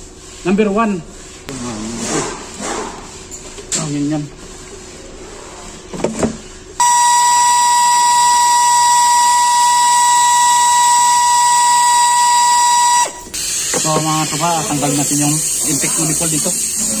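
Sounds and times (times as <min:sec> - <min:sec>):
high-pitched electronic beep: 0:06.8 - 0:13.3.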